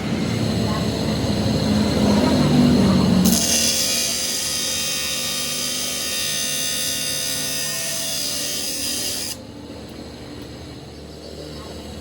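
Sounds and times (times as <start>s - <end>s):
power tool whining: 3.2s - 9.4s.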